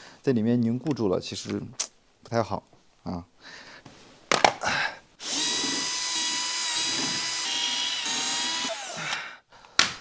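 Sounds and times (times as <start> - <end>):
power drill whining: 5.2 - 9.3.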